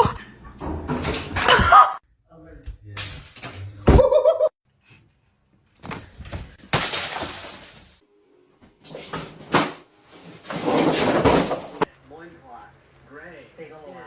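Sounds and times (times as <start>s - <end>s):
object falling and shattering: 6.6s - 8.0s, 8.9s - 11.9s.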